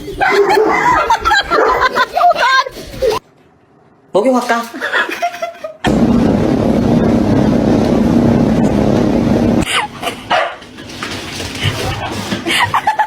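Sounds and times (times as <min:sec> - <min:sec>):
mechanical drone with low hum: 0:05.9 - 0:09.8.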